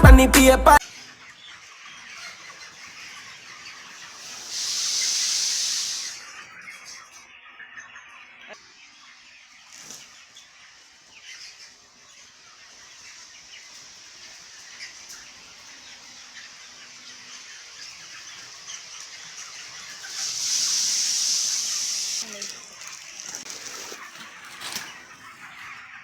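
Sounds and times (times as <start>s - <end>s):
chickens peeping and squawking: 0.4s - 26.0s
loud steady hiss: 4.0s - 6.4s, 12.9s - 24.0s.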